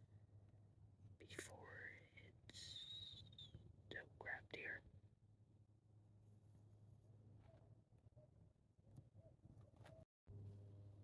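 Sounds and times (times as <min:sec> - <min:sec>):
faint low hum: 0:00.0 - 0:11.0
tiny chirp-like sounds: 0:01.2 - 0:04.7.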